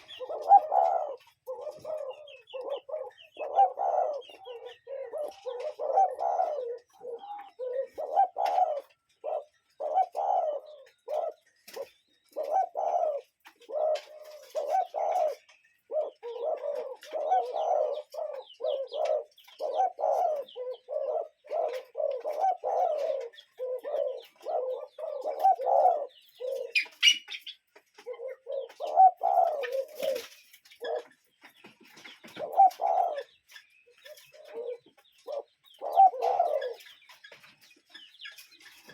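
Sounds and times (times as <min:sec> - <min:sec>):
birds cooing: 0:00.0 - 0:38.9
high bird chirp: 0:14.0 - 0:27.7, 0:28.6 - 0:38.9.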